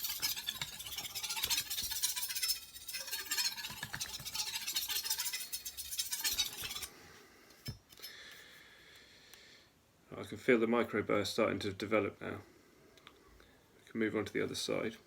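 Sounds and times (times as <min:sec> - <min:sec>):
knife scraping on whetstone: 0:00.0 - 0:07.0, 0:07.6 - 0:08.0.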